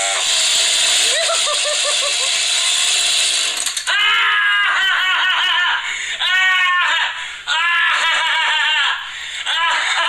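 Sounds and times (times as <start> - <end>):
chainsaw engine revving: 0.0 - 3.9.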